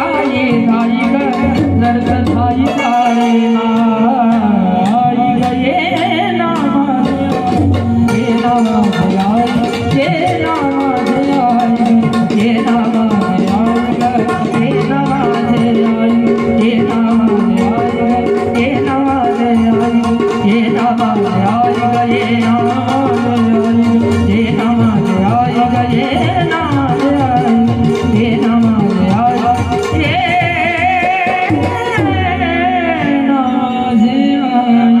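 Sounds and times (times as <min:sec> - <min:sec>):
wavering melodic line with vibrato: 0:00.0 - 0:11.6
hand drum percussion: 0:00.0 - 0:35.0.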